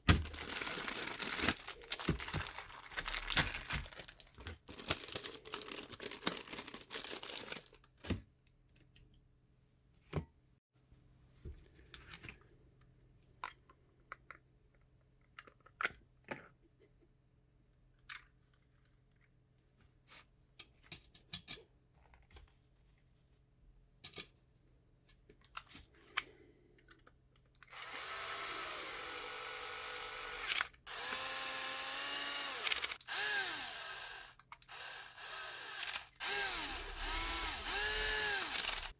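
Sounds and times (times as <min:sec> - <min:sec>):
crinkling: 0:00.1 - 0:08.1
power tool motor whirring: 0:27.7 - 0:38.9.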